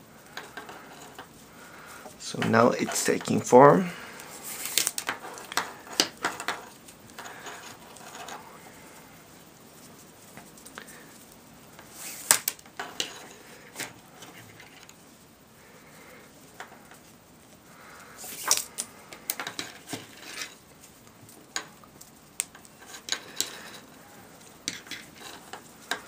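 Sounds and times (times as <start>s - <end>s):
cord rustling: 0.0s - 26.0s.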